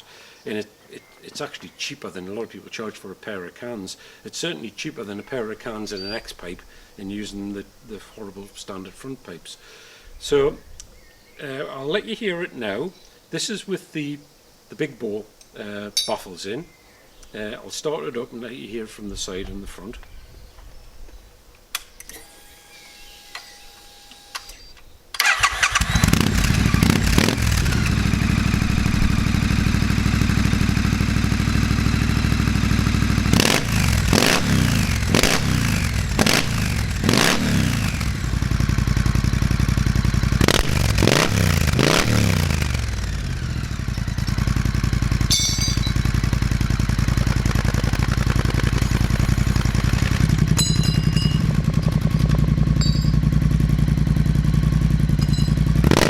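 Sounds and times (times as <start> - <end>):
motorcycle engine idling: 25.2 - 56.0
motorcycle engine revving: 25.2 - 56.0.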